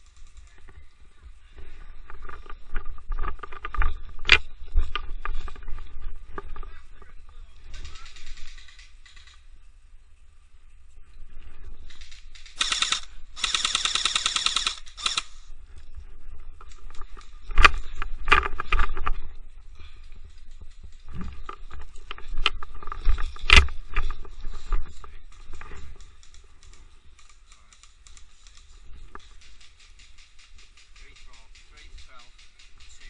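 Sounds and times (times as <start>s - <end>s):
airsoft full-auto bursts: 11.9s - 15.5s
sharp cracks of single shots: 12.4s - 15.4s.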